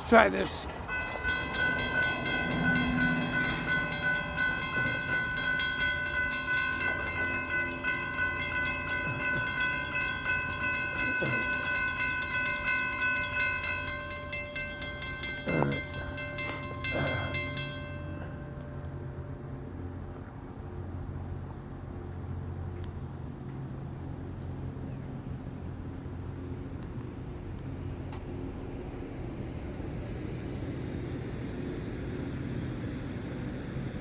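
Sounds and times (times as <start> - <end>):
crossing signal bells ringing: 0.0 - 20.0
train rumbling: 0.0 - 34.0.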